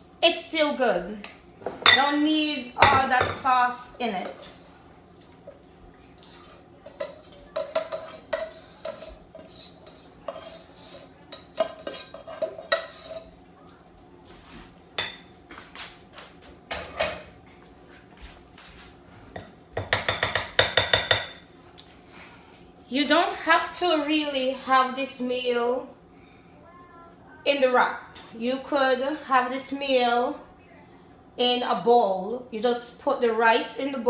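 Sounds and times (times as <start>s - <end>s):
dishes and utensils clattering: 1.6s - 2.2s, 2.8s - 3.6s, 6.2s - 13.4s, 15.0s - 15.4s, 16.7s - 17.4s, 19.1s - 21.5s.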